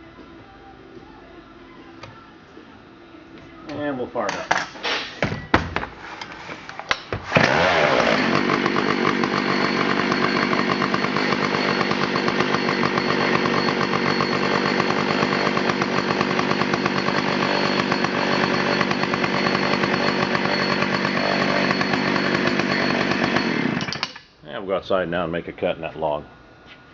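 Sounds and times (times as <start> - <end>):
chainsaw engine running: 7.2 - 24.1.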